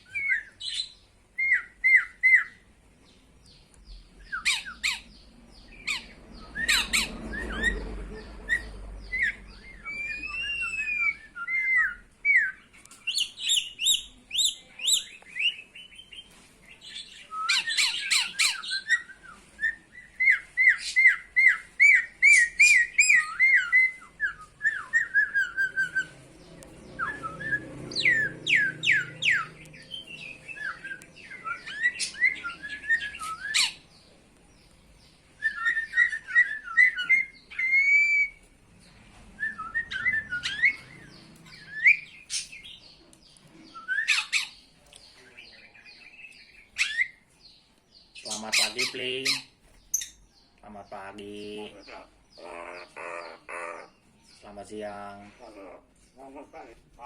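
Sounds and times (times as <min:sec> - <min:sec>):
myna squawks and whistles: 0:08.5 - 0:12.5, 0:39.5 - 0:42.1.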